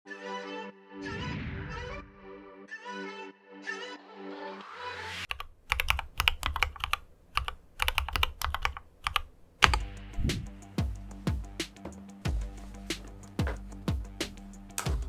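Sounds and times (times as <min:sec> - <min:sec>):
rising swish: 0:01.0 - 0:02.3, 0:10.1 - 0:10.6
keyboard typing clicks: 0:05.3 - 0:09.9
deeper thuds: 0:10.2 - 0:10.5.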